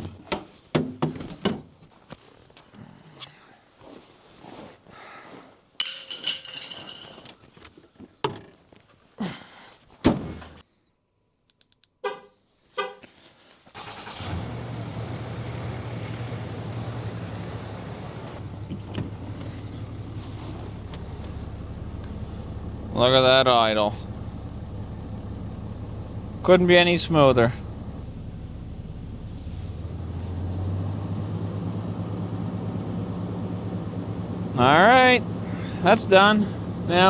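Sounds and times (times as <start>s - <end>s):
loud thunk: 10.0s - 10.5s
diesel engine idling: 13.8s - 37.0s.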